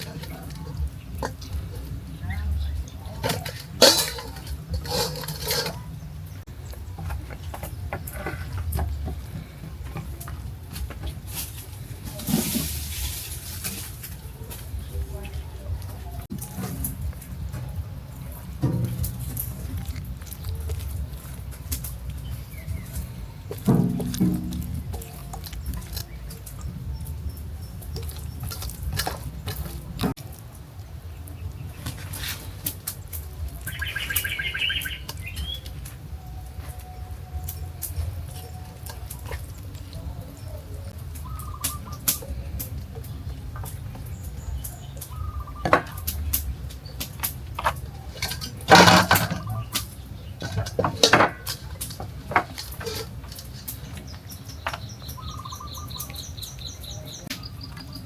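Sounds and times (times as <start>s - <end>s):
knocks and clattering: 3.1s - 6.1s, 18.5s - 20.0s, 22.8s - 26.0s, 47.0s - 53.6s
bird chirps: 33.6s - 37.8s, 41.2s - 42.3s, 44.1s - 47.0s, 53.8s - 58.0s.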